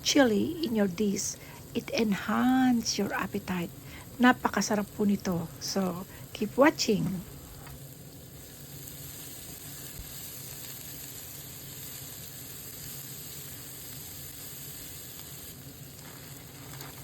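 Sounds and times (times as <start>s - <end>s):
vegetables sizzling in a frying pan: 0.0s - 17.0s.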